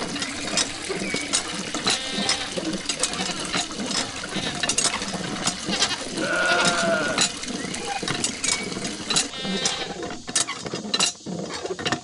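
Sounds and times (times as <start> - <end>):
sharp clicks and clatters: 0.0 - 12.0
animal bleating: 1.9 - 2.6, 4.2 - 4.7, 5.6 - 7.2, 9.3 - 10.0.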